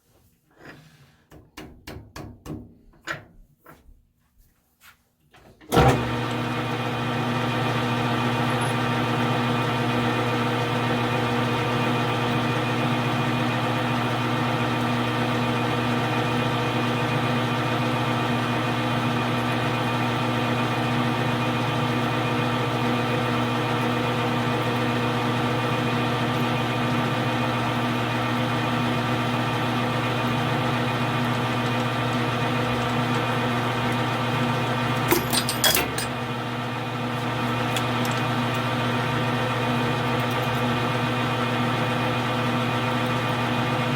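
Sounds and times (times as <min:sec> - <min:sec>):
metal lathe drilling: 0:06.3 - 0:13.1.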